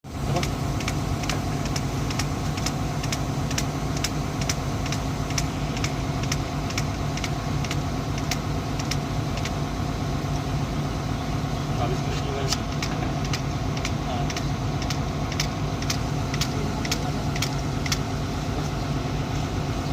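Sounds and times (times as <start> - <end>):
excavator diesel engine idling: 0.0 - 19.9
sharp even clicking: 0.3 - 9.6, 12.5 - 18.1.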